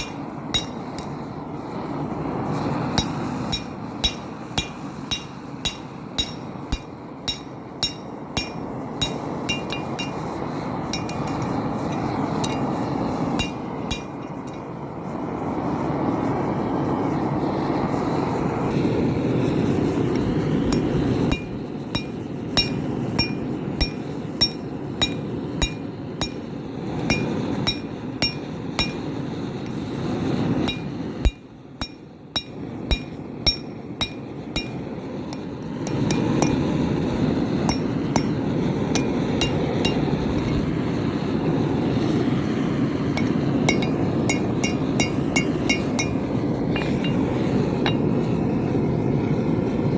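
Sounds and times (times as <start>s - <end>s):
hammer ringing on anvil: 0.0s - 1.2s, 3.0s - 10.4s, 11.0s - 12.7s, 13.4s - 14.7s, 20.7s - 29.8s, 30.6s - 36.8s, 37.5s - 40.7s, 43.2s - 48.1s.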